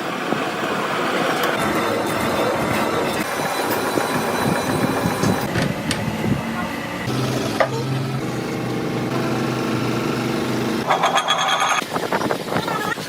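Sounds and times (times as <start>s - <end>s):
mixed workshop noise: 0.0s - 12.7s
machine humming steadily: 1.6s - 10.9s.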